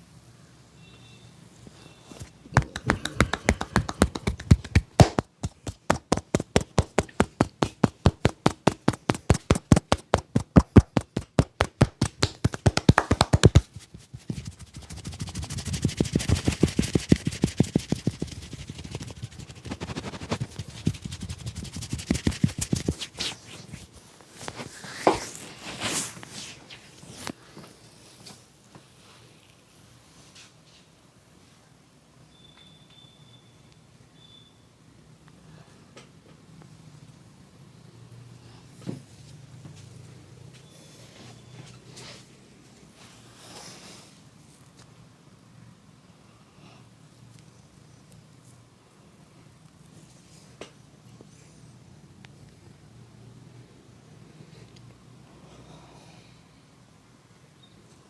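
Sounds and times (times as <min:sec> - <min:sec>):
soft hand pats: 0:02.2 - 0:28.4
hands slapping head and body: 0:02.5 - 0:23.3.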